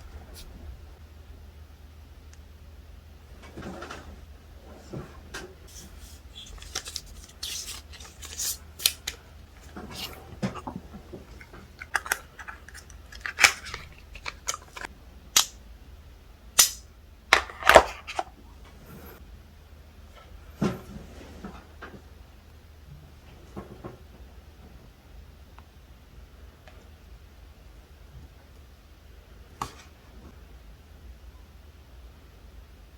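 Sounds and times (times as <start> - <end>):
cardboard packaging clicks and rustles: 5.7 - 14.9.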